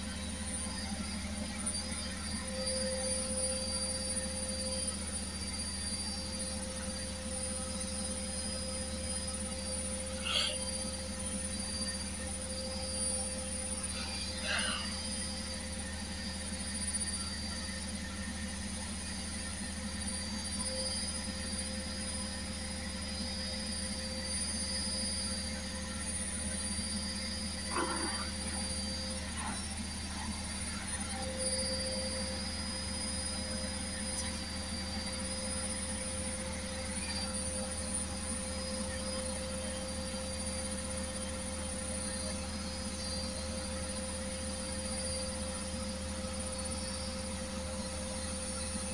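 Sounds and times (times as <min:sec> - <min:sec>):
washing machine humming: 0:25.6 - 0:48.9.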